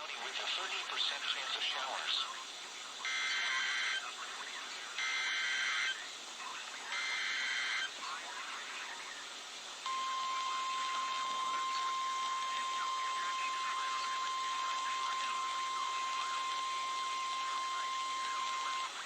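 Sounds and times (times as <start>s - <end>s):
radio hiss: 0.0s - 19.0s
steady high alarm tone: 9.9s - 18.9s.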